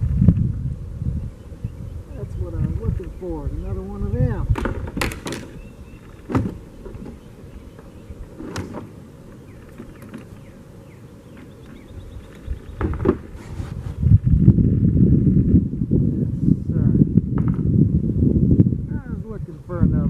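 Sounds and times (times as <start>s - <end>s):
low rustling and bumping: 4.2s - 10.4s, 11.3s - 17.9s.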